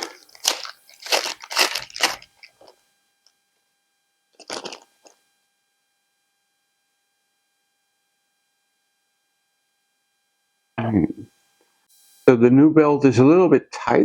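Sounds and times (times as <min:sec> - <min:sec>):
plastic packet crinkling: 0:00.0 - 0:02.7, 0:04.4 - 0:05.1.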